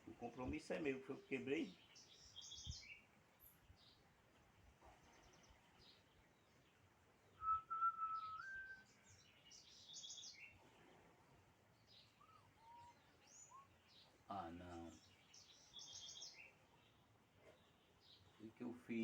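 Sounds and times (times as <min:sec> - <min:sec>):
small birds chirping: 0:00.0 - 0:19.0
whistled note rising in pitch: 0:07.4 - 0:08.8.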